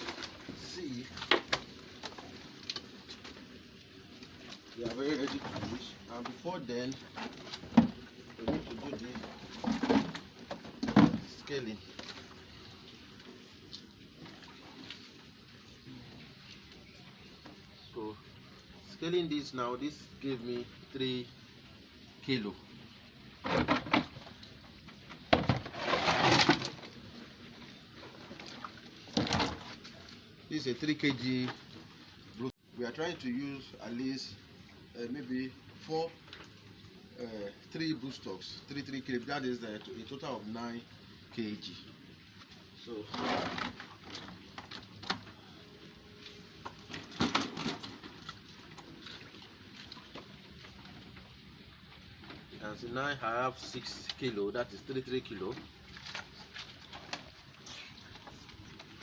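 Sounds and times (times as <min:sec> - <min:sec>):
fish scuffling and knocking: 0:07.0 - 0:12.4, 0:23.4 - 0:27.0, 0:28.0 - 0:30.1, 0:43.1 - 0:45.4, 0:46.2 - 0:51.3, 0:55.6 - 0:59.0
fish thrashing in container: 0:46.7 - 0:50.6.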